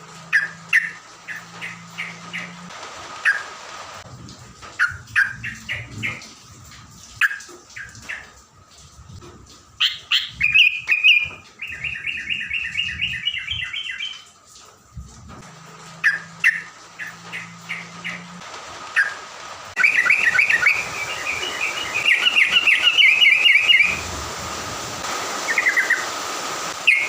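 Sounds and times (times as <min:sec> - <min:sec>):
bird chirping and trilling: 0:00.3 - 0:03.4, 0:09.8 - 0:14.3, 0:16.0 - 0:18.3, 0:19.8 - 0:24.1, 0:25.4 - 0:26.1.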